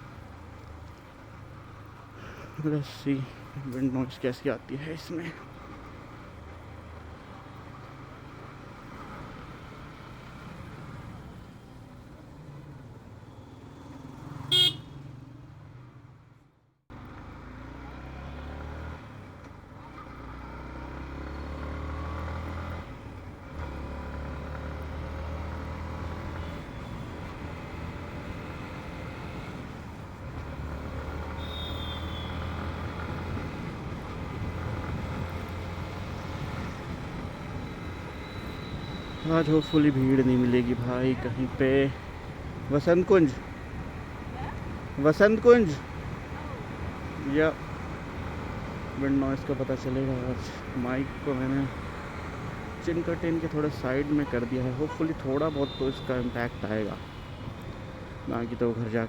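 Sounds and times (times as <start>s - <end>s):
engine and road noise: 0.0s - 59.0s
vehicle horn honk: 14.4s - 15.0s, 31.3s - 32.6s, 54.3s - 56.4s.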